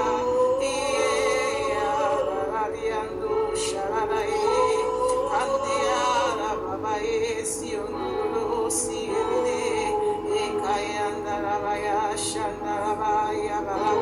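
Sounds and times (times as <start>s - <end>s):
worship music with sung melody: 0.0s - 14.0s.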